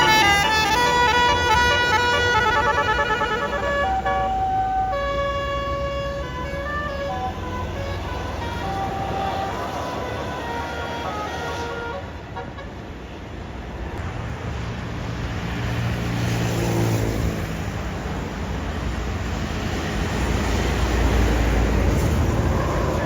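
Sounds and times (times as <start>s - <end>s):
large vehicle engine rumble passing: 0.0s - 12.4s, 13.4s - 23.0s.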